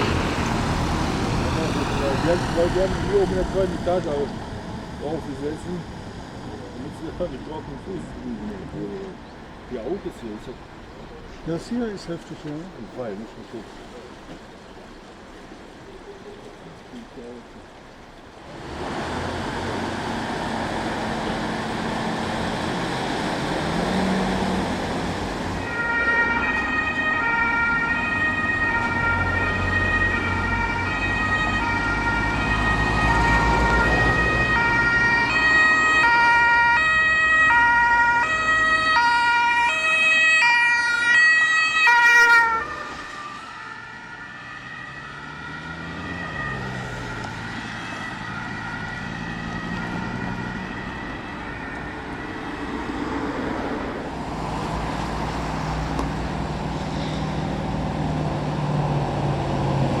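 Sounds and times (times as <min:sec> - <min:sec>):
traffic noise: 0:00.0 - 1:00.0
vehicle engine and road noise: 0:00.0 - 1:00.0
two-tone siren: 0:25.6 - 0:52.6.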